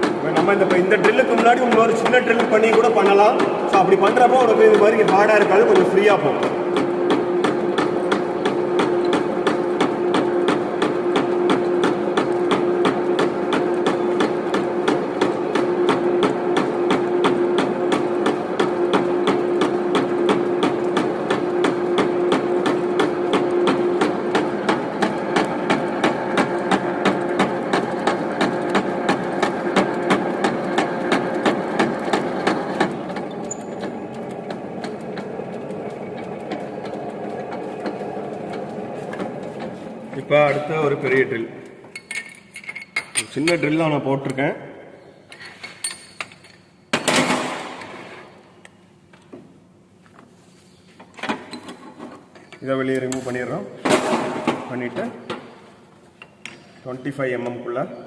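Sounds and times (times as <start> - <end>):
steady lathe hum: 0.0 - 42.0.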